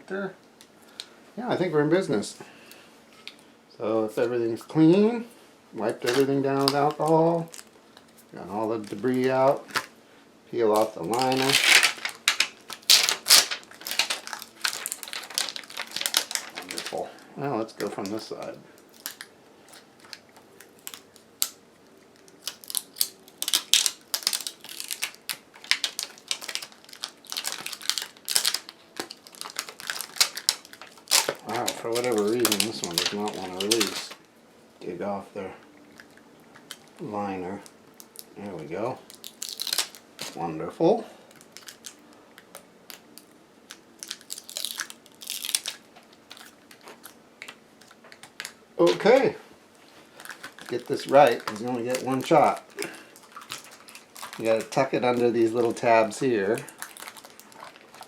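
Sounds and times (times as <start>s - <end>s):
plastic crinkling: 5.8s - 10.0s, 10.6s - 34.3s, 35.5s - 40.5s, 41.2s - 58.0s.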